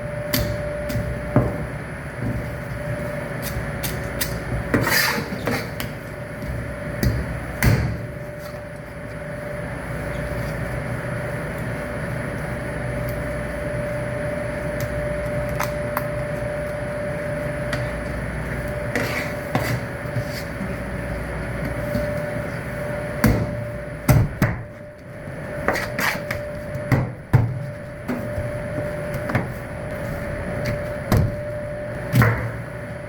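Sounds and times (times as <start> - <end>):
steady low hum: 0.0 - 33.0
thin steady whine: 0.0 - 33.0.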